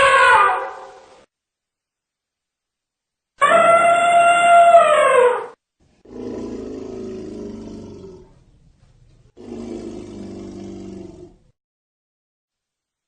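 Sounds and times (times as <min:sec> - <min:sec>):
elephant growling calls: 0:06.0 - 0:08.4, 0:09.4 - 0:11.5.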